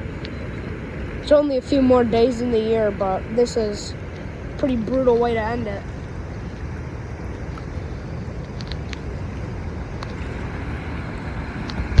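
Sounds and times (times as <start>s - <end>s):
flooded river rushing: 0.0s - 12.0s
wind buffeting microphone: 0.0s - 12.0s
faint clicks: 8.4s - 10.2s.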